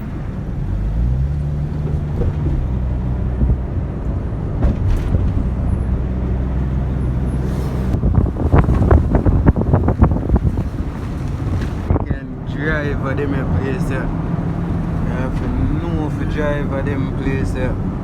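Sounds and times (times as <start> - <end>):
car engine running: 0.0 - 18.0
road noise: 0.0 - 18.0
wind gusts hitting microphone: 1.9 - 16.3.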